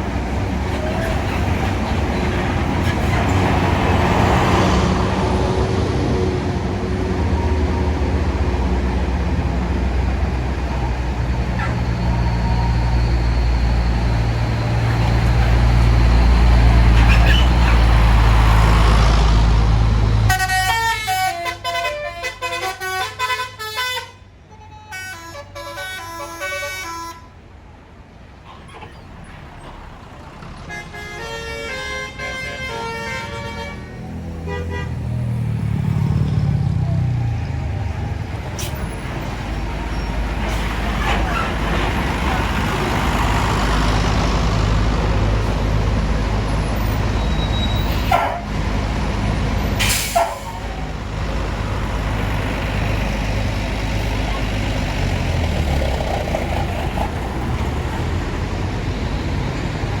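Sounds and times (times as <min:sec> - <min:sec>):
bus engine rumbling: 0:00.0 - 1:00.0
multi-tone bus horn tune: 0:20.2 - 0:27.4, 0:30.6 - 0:35.4.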